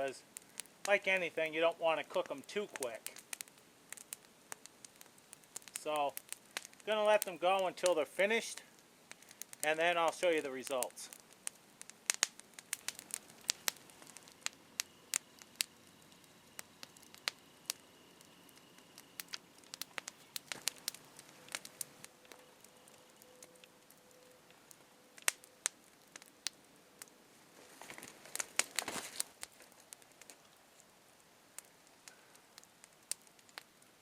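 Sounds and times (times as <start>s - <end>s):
campfire crackling and popping: 0.0s - 34.0s
rustling: 27.0s - 30.9s.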